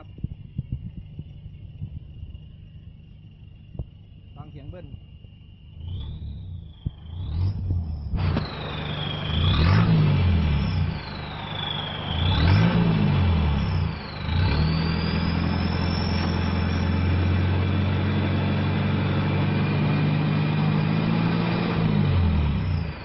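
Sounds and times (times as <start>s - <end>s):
high turbo whistle: 5.2s - 23.0s
diesel engine revving: 5.6s - 23.0s.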